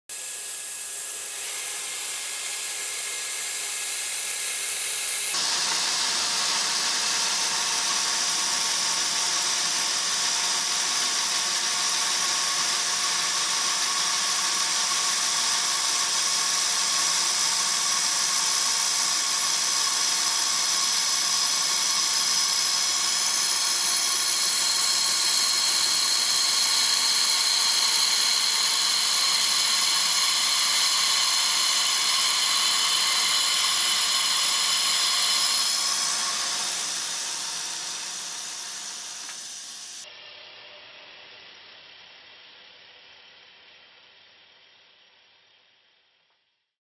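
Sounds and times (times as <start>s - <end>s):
milling machine cutting metal: 0.1s - 5.4s, 23.6s - 40.0s
ringing machine whine: 0.1s - 5.4s.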